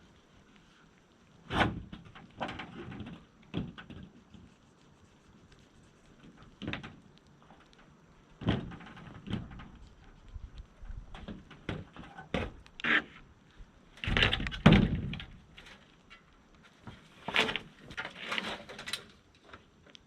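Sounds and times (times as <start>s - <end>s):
plastic roofing panel knocking: 8.4s - 9.8s.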